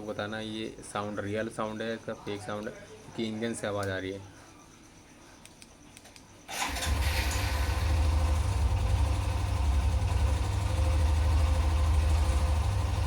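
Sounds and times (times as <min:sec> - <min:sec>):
motorcycle engine idling: 0:06.6 - 0:13.0.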